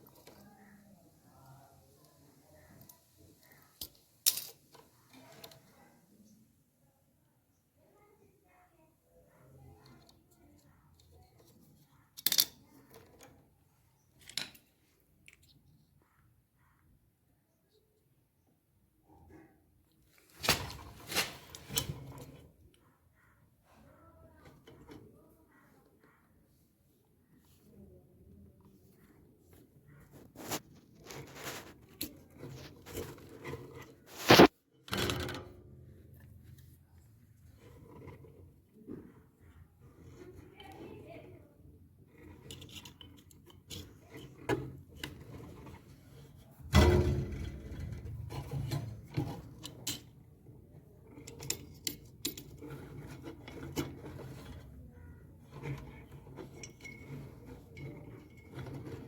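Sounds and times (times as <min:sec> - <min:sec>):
rustling: 0:27.2 - 0:34.5.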